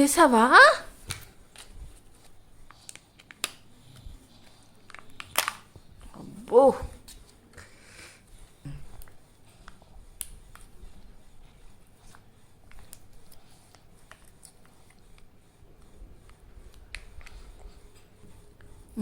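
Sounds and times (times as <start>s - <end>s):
plastic capsule and wrapper crinkling: 4.8s - 5.7s.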